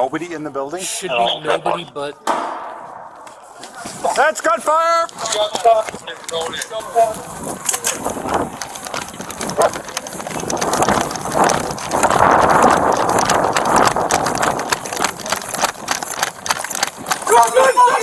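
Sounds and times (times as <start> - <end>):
running footsteps: 1.2 - 18.0
gear clattering: 7.4 - 17.7.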